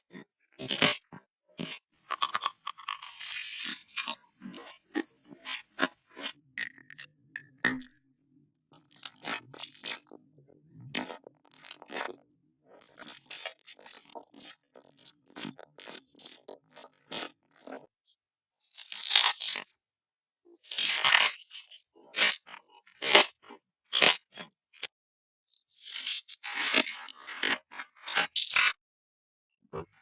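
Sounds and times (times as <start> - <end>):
crunching and chewing: 0.1 - 8.0, 8.6 - 17.9, 18.6 - 19.8, 20.6 - 24.9, 26.0 - 28.8.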